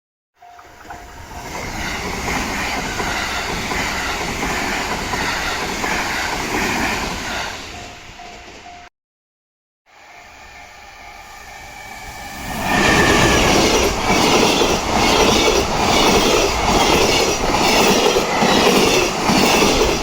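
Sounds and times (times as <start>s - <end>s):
crossing warning bell ringing: 0.4s - 1.9s, 9.9s - 19.9s
train wheels on rails: 0.4s - 8.9s, 10.0s - 20.0s.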